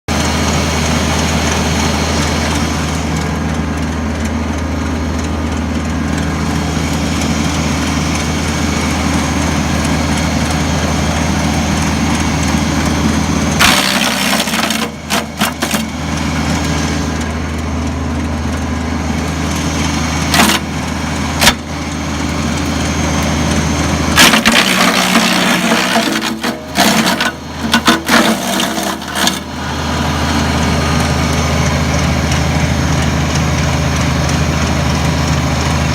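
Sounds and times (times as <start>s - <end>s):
wood chipper engine humming: 0.1s - 35.9s
wood cracking and splintering: 13.6s - 16.0s, 20.3s - 20.8s, 24.2s - 29.5s.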